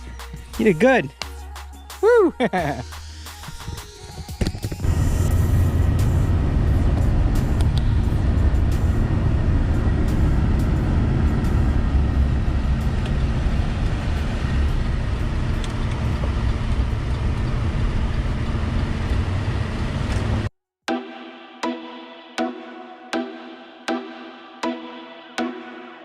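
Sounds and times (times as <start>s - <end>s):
diesel engine rumbling: 4.8s - 20.5s.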